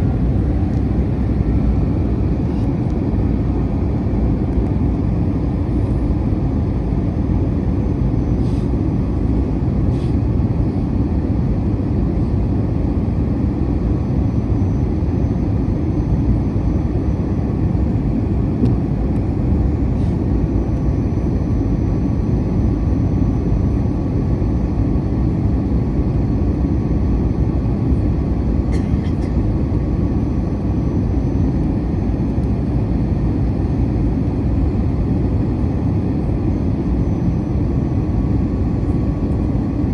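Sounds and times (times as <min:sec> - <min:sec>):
airplane cabin engine rumble: 0:00.0 - 0:39.9.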